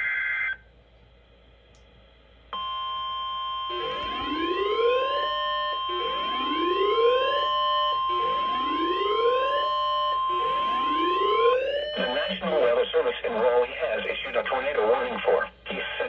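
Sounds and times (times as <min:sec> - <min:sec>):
rising whooping siren: 0:03.6 - 0:12.7
steady high alert tone: 0:03.7 - 0:13.9.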